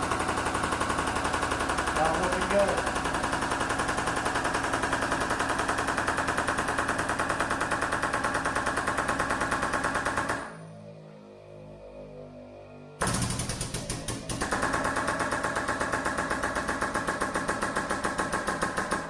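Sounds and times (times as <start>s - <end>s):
air pump chattering rapidly: 0.0s - 10.1s.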